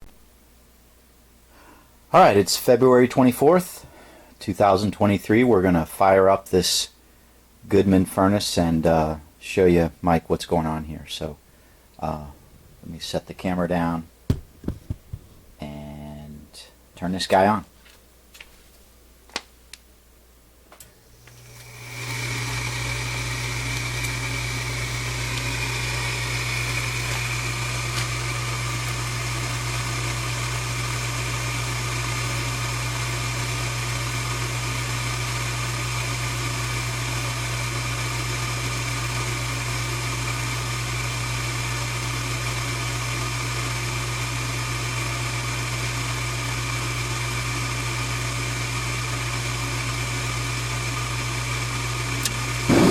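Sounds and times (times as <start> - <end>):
furnace fan humming and whining: 0.4 - 52.9.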